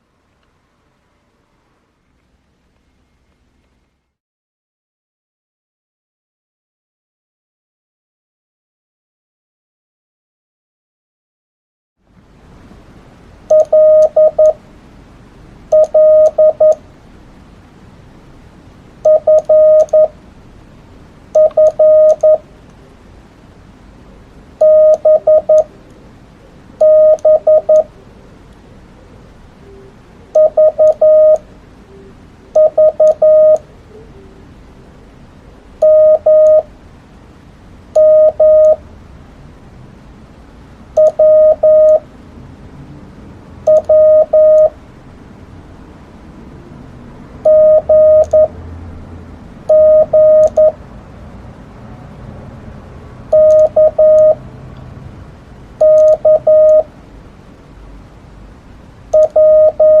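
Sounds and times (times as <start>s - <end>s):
morse code beeps: 13.5s - 14.6s, 15.7s - 16.8s, 19.0s - 20.2s, 21.4s - 22.4s, 24.6s - 25.7s, 26.8s - 27.9s, 30.4s - 31.4s, 32.6s - 33.6s, 35.8s - 36.7s, 38.0s - 38.8s, 41.0s - 42.0s, 43.7s - 44.8s, 47.4s - 48.5s, 49.7s - 50.8s, 53.3s - 54.4s, 55.8s - 56.9s, 59.1s - 60.0s.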